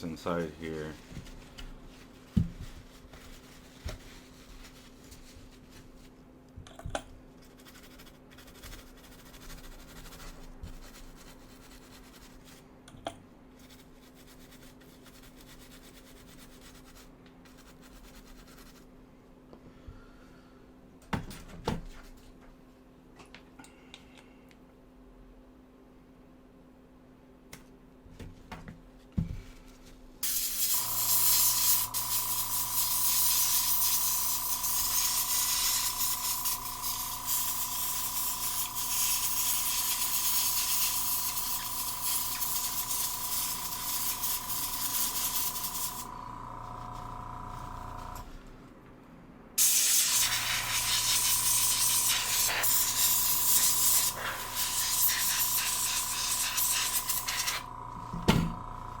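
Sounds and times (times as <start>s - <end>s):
motor hum: 30.8s - 48.6s, 50.3s - 59.0s.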